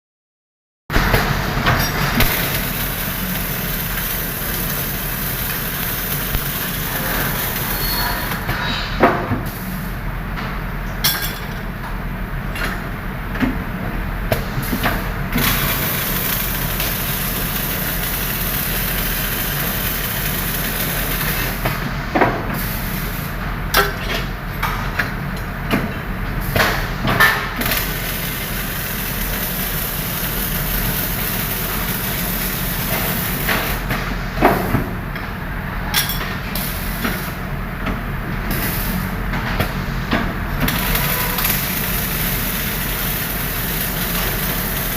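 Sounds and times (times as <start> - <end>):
welding hiss: 2.2 - 8.4, 15.4 - 21.6, 27.6 - 33.8, 40.6 - 44.9.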